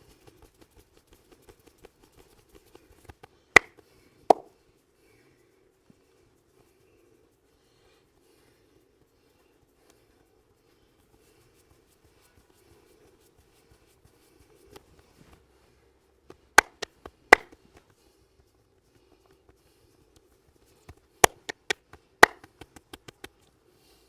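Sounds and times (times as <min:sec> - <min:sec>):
massage smacks and pops: 0:00.2 - 0:04.5, 0:16.3 - 0:18.0, 0:20.2 - 0:23.5.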